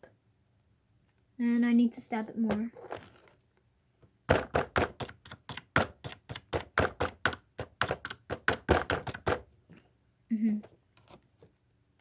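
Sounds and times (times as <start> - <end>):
tool stabbing plastic bottle seal: 4.3 - 9.5.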